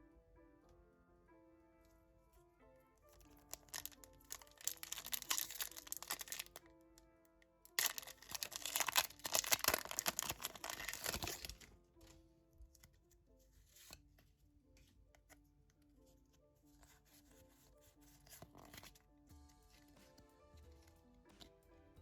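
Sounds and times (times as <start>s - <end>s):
background music: 0.0s - 22.0s
packaging crinkling and tearing: 3.2s - 6.6s, 7.7s - 11.7s.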